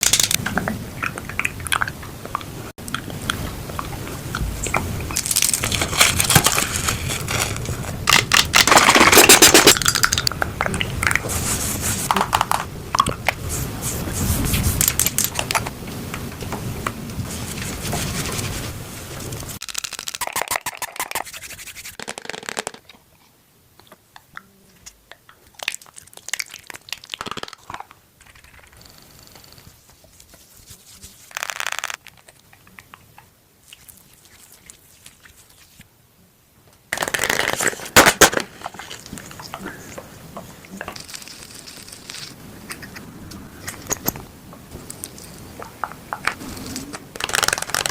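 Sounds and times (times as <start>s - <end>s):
packaging crinkling: 5.1s - 10.3s, 37.0s - 39.6s, 47.1s - 47.9s
scraping on packaging: 5.2s - 9.8s.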